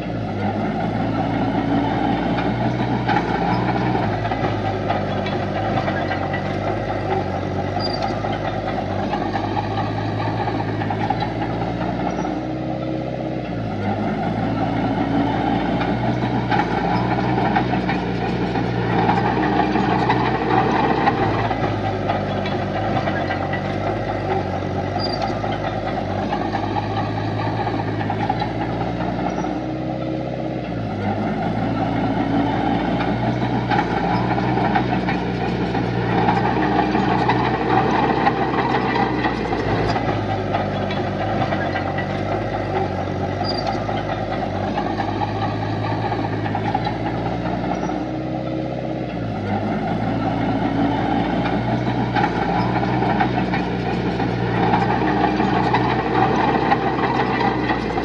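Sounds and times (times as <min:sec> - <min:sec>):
heavy diesel machinery running: 0:00.0 - 0:58.0.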